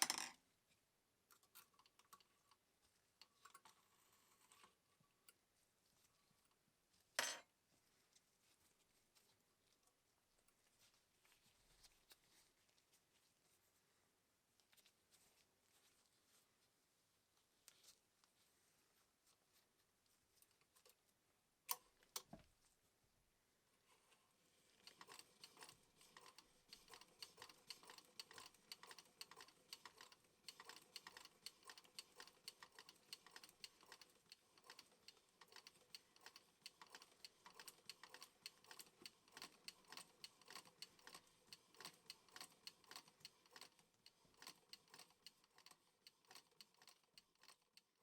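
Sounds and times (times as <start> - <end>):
sewing machine clicking: 24.8 - 48.0.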